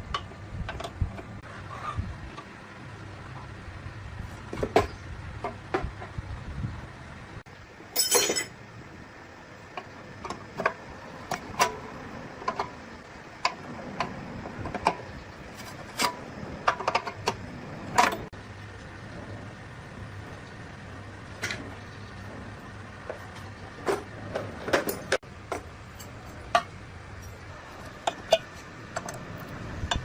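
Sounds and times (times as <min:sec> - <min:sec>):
metal parts clattering: 0:07.9 - 0:08.6
metal tools clicking and clinking: 0:07.9 - 0:08.6, 0:23.8 - 0:30.0.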